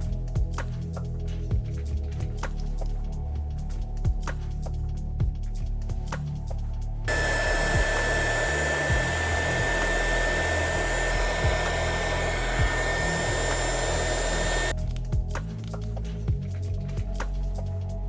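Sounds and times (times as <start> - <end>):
heat gun blowing: 7.1 - 14.7.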